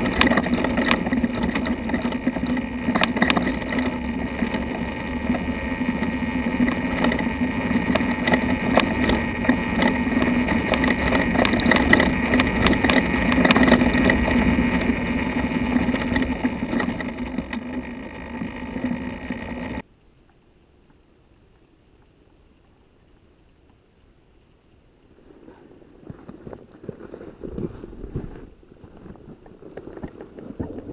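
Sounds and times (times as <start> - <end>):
motorcycle clunks and rattles: 0.0 - 19.8
tyre noise: 0.0 - 19.8, 25.2 - 30.9
wind: 0.0 - 30.9.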